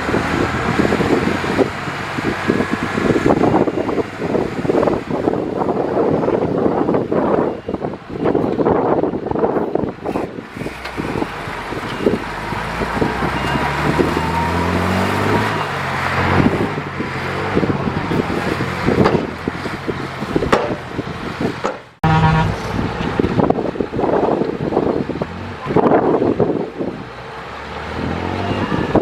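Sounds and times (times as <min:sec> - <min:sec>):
diesel engine running under load: 0:00.0 - 0:27.7
metallic knocks: 0:20.4 - 0:20.9, 0:21.6 - 0:22.8.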